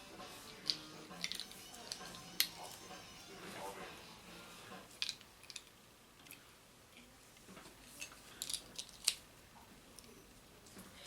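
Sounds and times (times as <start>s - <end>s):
plastic bricks clicking together: 0.7s - 2.5s, 5.0s - 5.7s, 8.0s - 9.2s.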